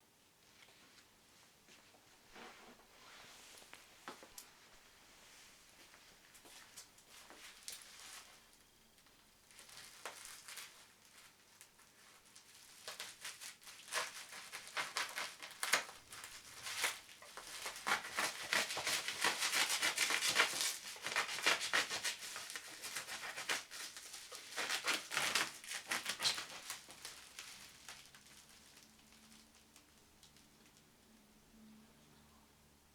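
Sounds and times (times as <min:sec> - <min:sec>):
packaging crinkling and rustling: 0:06.3 - 0:31.0.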